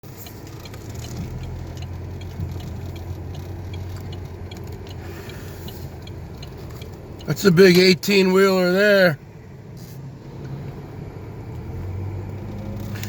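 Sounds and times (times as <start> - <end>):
car engine and road rumble: 0.0 - 13.0
faint light ticks: 0.1 - 7.3.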